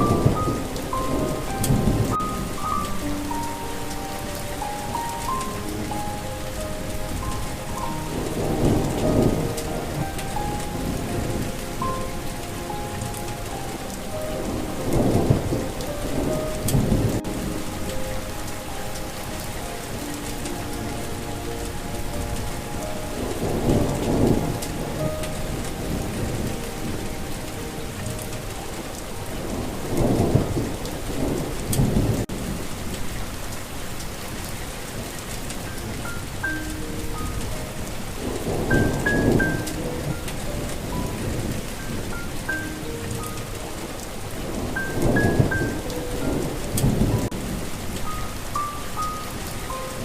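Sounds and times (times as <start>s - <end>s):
thunder rolling: 0.0s - 33.5s
soft melody of held notes: 0.0s - 50.0s
steady rain: 0.0s - 50.0s.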